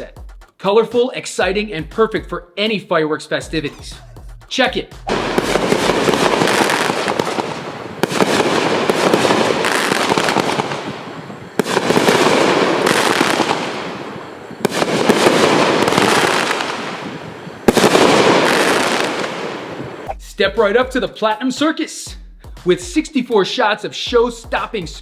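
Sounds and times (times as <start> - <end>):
fireworks crackling volleys: 5.1 - 20.1.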